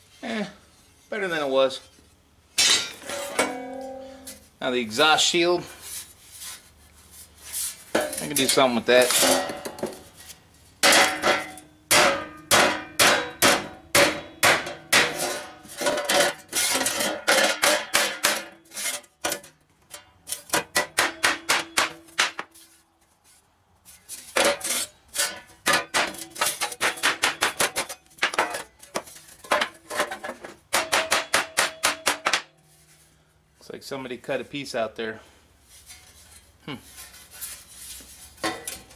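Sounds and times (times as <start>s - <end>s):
hammer striking sheet metal: 10.8s - 15.3s, 20.8s - 22.5s, 25.7s - 27.9s, 30.8s - 32.5s.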